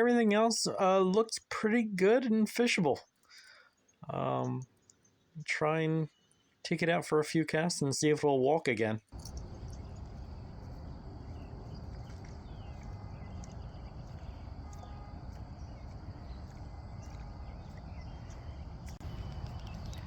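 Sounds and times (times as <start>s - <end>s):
faint bird chirps: 3.0s - 6.6s, 9.2s - 20.0s
low rumble: 9.2s - 20.0s.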